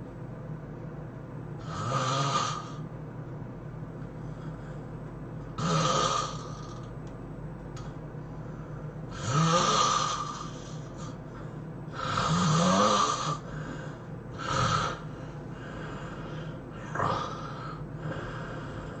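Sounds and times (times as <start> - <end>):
person snoring loudly: 1.6 - 2.8, 5.6 - 6.9, 9.1 - 11.2, 11.9 - 19.0.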